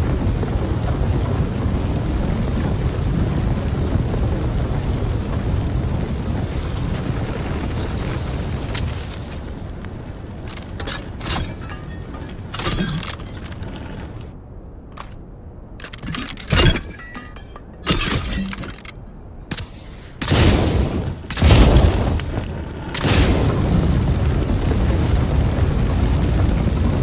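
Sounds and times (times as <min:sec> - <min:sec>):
flamethrower firing: 0:00.0 - 0:14.3, 0:20.2 - 0:27.0
fire crackling and popping: 0:00.0 - 0:14.4, 0:18.7 - 0:27.0.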